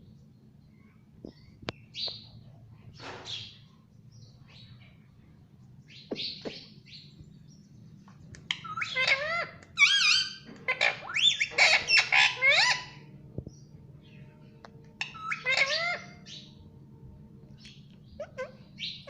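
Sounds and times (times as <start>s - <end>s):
parrot chirping: 8.5s - 13.0s, 15.0s - 16.5s, 17.6s - 19.0s.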